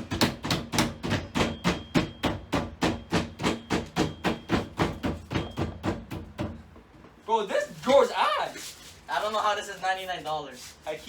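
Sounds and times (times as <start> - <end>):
hammer tapping nails: 0.0 - 6.6.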